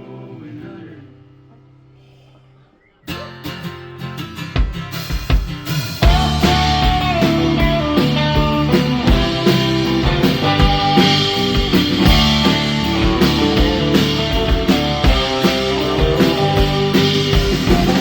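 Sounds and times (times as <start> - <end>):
held guitar notes: 3.1 - 18.0
rock band playing: 3.1 - 18.0.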